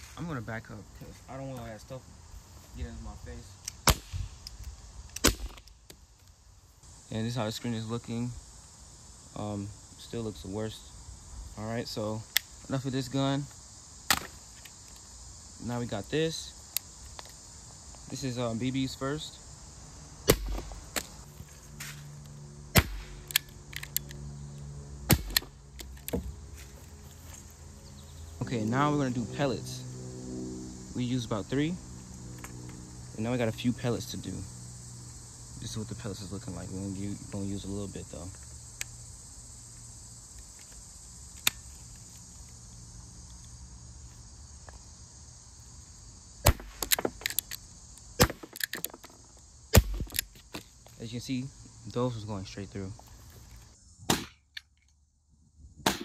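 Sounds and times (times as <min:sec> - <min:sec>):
crickets chirping: 0:00.0 - 0:56.0
air rifle shots: 0:03.8 - 0:04.3, 0:22.7 - 0:23.3, 0:46.4 - 0:46.9.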